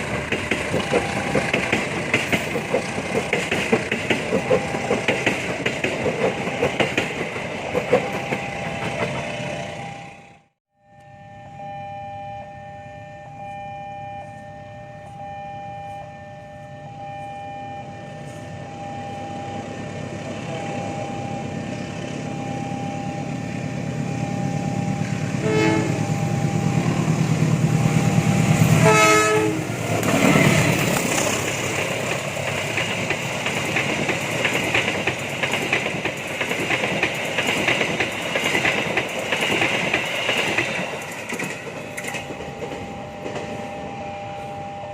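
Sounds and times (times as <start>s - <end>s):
rattle of train wheels: 0.0s - 10.3s, 20.2s - 44.0s
train rumble: 0.0s - 10.6s, 15.9s - 44.9s
steady pitched tone: 9.5s - 30.0s
train horn blasts: 24.1s - 26.8s, 28.4s - 29.9s, 42.9s - 44.9s.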